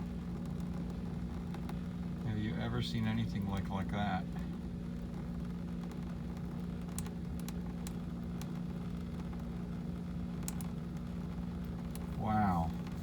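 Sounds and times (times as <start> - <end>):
low machine hum: 0.0 - 13.0
faint clicks: 10.4 - 10.7.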